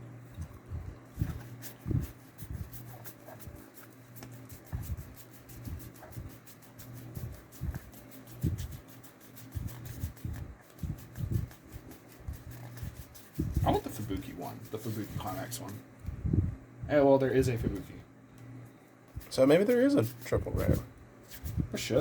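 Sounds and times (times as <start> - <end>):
low hum: 0.0 - 17.0.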